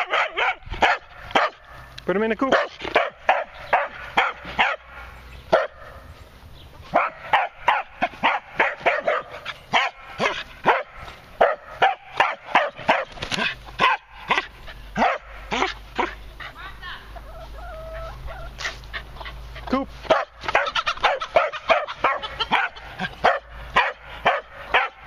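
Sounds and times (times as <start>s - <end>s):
dog barking: 0.0s - 1.7s, 2.5s - 5.9s, 6.9s - 16.2s, 20.1s - 25.0s.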